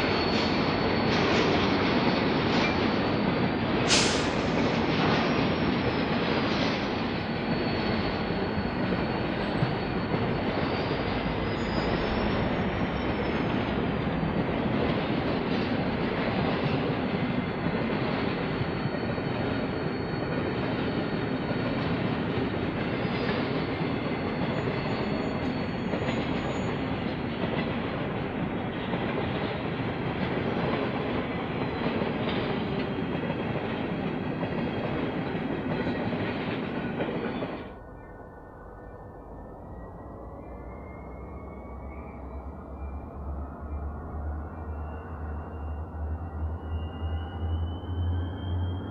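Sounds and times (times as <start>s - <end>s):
high wheel squeal: 0.0s - 14.0s, 16.7s - 27.3s, 36.8s - 48.9s
freight train rumbling past: 0.0s - 48.9s.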